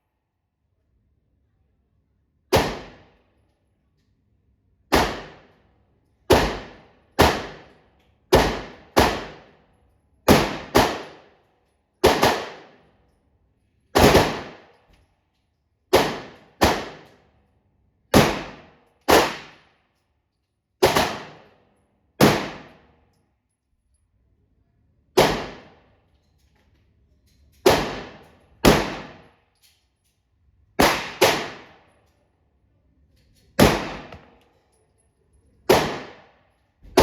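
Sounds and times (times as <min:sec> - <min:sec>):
pistol shots: 0:02.5 - 0:03.1, 0:04.9 - 0:05.5, 0:06.3 - 0:07.7, 0:08.3 - 0:09.6, 0:10.2 - 0:11.3, 0:12.0 - 0:12.8, 0:14.0 - 0:14.7, 0:15.9 - 0:17.1, 0:18.1 - 0:19.7, 0:20.8 - 0:21.5, 0:22.2 - 0:22.9, 0:25.2 - 0:25.8, 0:27.6 - 0:29.3, 0:30.8 - 0:31.9, 0:33.6 - 0:34.4, 0:35.7 - 0:37.0.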